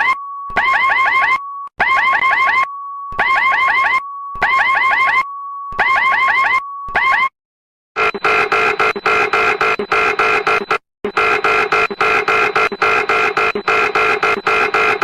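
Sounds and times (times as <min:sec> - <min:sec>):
steady electronic beep: 0:08.0 - 0:15.0.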